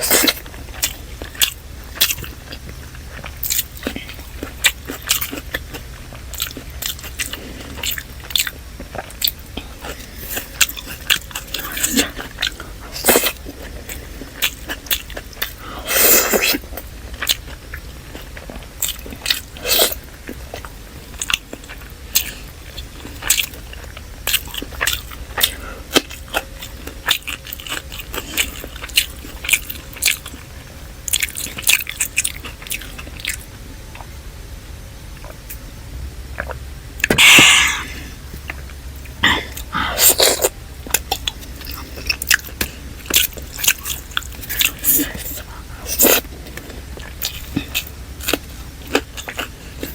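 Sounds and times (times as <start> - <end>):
chewing and crunching: 0.0 - 34.3, 35.0 - 49.9.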